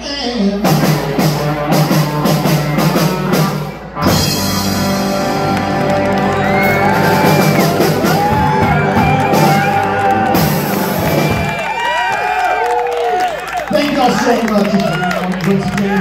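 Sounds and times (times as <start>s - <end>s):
live rock band: 0.0s - 12.8s
crowd whooping: 5.0s - 16.0s.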